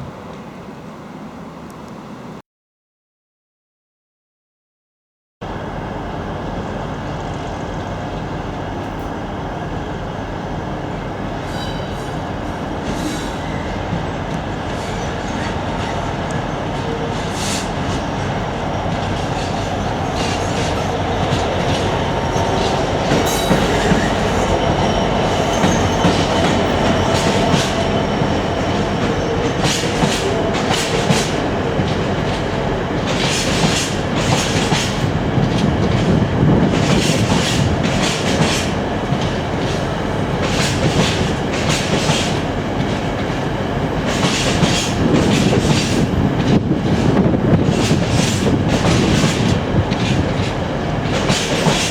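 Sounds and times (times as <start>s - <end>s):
train rumble: 5.4s - 51.9s
train wheels clattering: 11.5s - 51.9s
wheel squeal: 23.2s - 30.3s.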